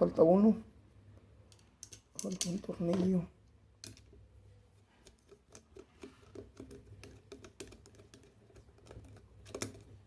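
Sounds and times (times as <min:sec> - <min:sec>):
screw clicks and taps: 0:05.0 - 0:10.0.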